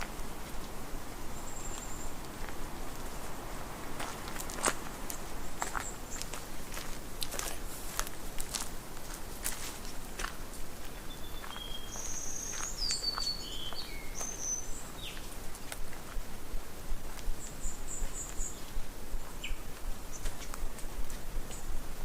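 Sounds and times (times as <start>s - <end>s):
steady outdoor hiss: 0.0s - 22.0s
songbirds whistling and chirping: 11.0s - 15.3s.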